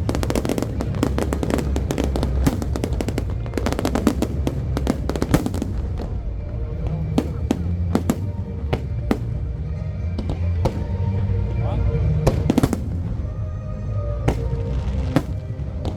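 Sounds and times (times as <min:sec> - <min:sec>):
fireworks crackling and banging: 0:00.0 - 0:11.4, 0:12.0 - 0:15.9
music: 0:00.0 - 0:15.9.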